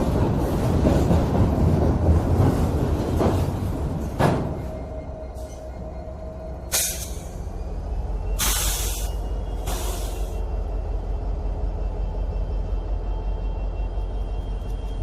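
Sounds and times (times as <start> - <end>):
train low rumble: 0.0 - 15.0
air hiss bursts: 6.7 - 7.3, 8.4 - 10.4.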